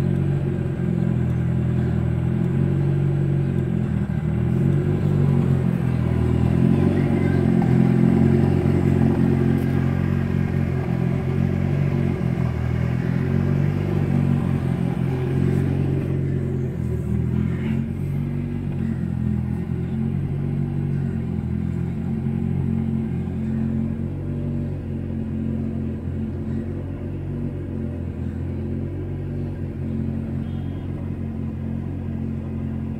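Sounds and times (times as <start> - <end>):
car engine running: 0.0 - 32.9.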